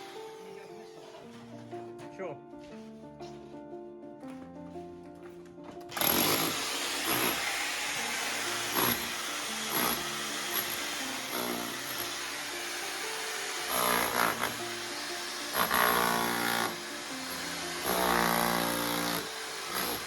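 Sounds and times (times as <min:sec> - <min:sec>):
power tool running: 0:00.0 - 0:01.3, 0:05.9 - 0:20.0.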